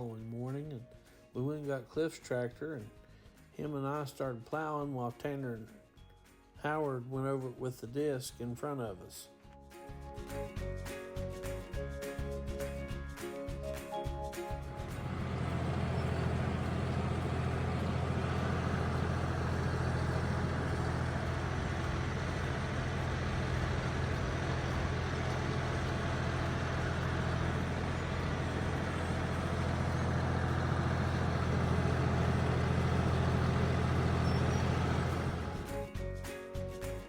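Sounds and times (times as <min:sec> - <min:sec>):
tractor engine running: 0:14.5 - 0:35.9.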